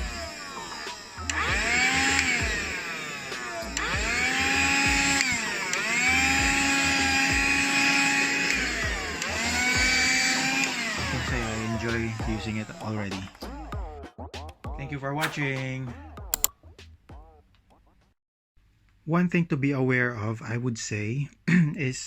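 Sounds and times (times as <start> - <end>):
hand vacuum motor whine: 0.0 - 13.0.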